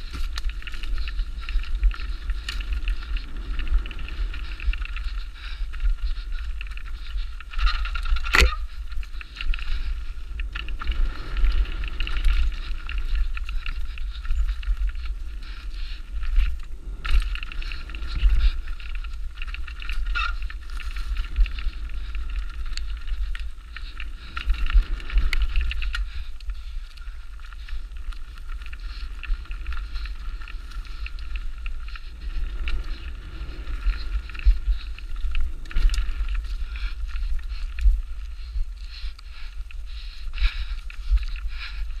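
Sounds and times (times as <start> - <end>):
bike tyres on dirt: 0.0 - 42.0
wind rumbling on microphone: 0.0 - 42.0.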